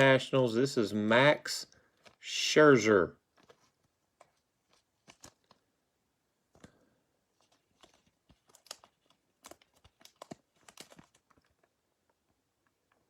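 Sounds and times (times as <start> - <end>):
trading cards being shuffled: 1.7 - 5.7, 6.5 - 11.8.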